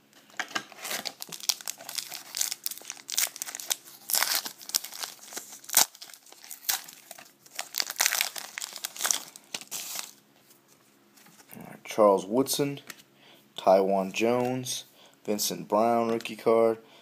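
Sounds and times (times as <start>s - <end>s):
plastic wrapper crinkling and tearing: 0.4s - 10.2s.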